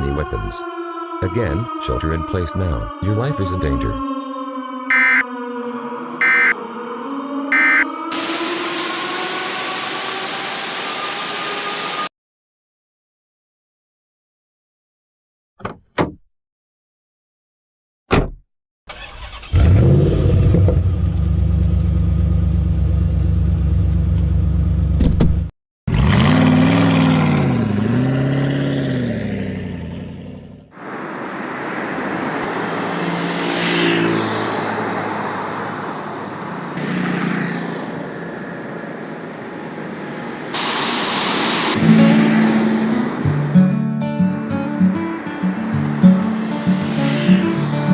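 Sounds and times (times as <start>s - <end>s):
falling tones: 4.9s - 5.2s, 6.2s - 6.6s, 7.5s - 8.0s
rushing noise: 30.8s - 33.9s, 40.2s - 43.6s
car engine humming: 30.8s - 47.9s.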